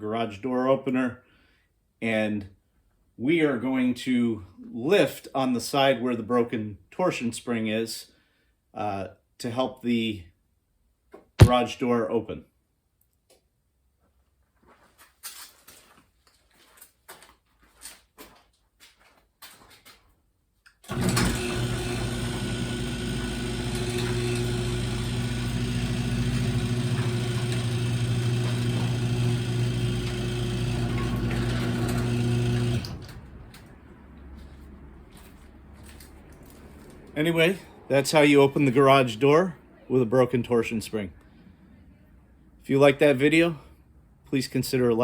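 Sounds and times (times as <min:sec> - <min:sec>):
faint knocks and shuffling: 0:13.2 - 0:20.3, 0:33.5 - 0:37.2
garage door opener motor humming: 0:20.9 - 0:33.7.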